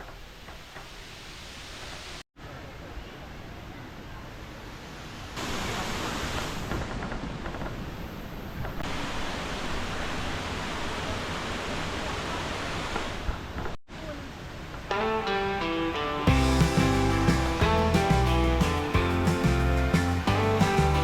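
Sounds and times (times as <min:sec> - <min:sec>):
waterfall roaring: 0:05.1 - 0:07.0, 0:08.9 - 0:13.5, 0:16.3 - 0:21.0.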